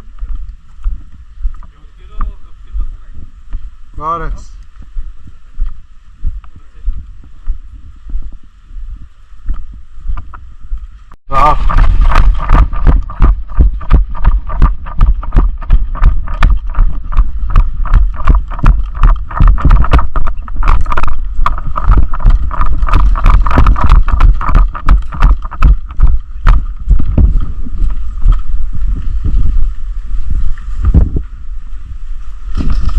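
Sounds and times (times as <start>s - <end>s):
footsteps walking briskly: 0.0s - 31.4s
microphone handling noise: 0.0s - 32.9s
wind rumble: 0.0s - 32.9s
gear rattling: 11.4s - 29.8s.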